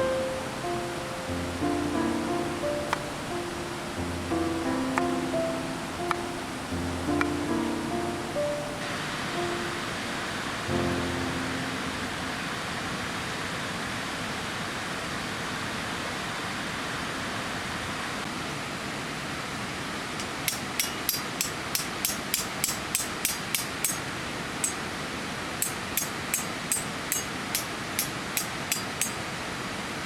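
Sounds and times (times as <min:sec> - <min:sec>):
heavy rain hissing: 0:00.0 - 0:13.5.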